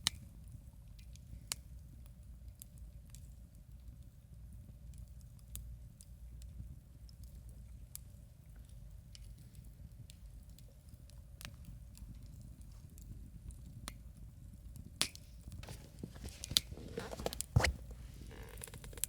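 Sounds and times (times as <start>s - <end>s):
campfire crackling and popping: 4.6s - 19.0s.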